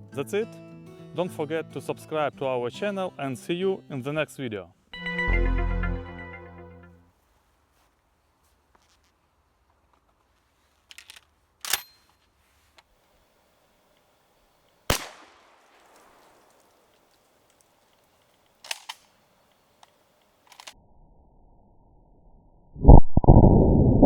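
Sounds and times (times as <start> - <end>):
shotgun shots with echo: 14.9 - 16.9.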